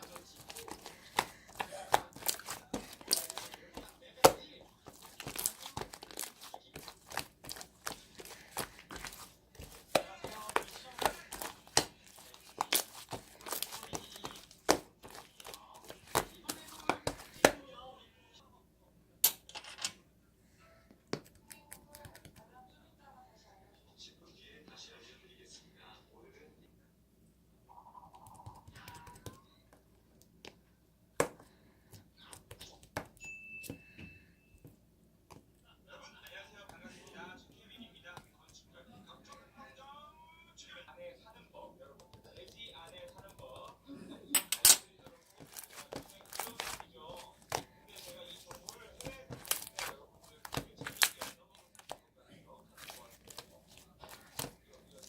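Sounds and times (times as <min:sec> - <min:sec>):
slime squished by hand: 0:00.0 - 0:17.6, 0:45.4 - 0:52.0.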